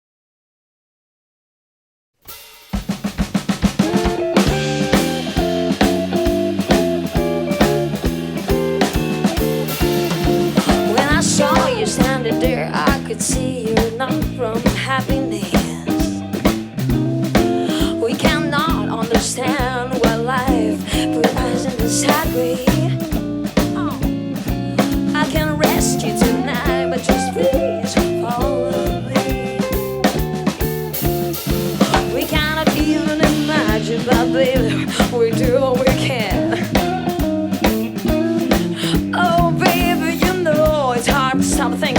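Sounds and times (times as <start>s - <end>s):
blues-rock band playing: 2.8s - 41.9s
gliding vocal line: 10.4s - 14.3s.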